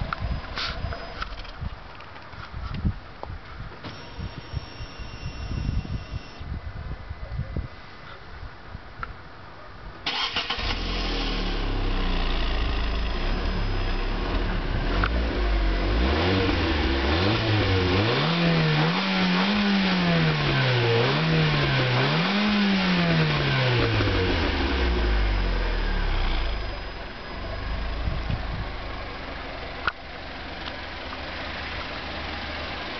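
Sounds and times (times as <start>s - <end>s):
car engine starting and idling: 3.8s - 6.4s, 10.0s - 32.9s
car engine revving: 10.1s - 29.5s.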